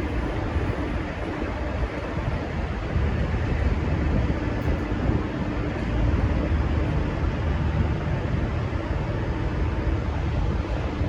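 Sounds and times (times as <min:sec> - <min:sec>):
diesel train engines rumbling: 0:00.0 - 0:11.0.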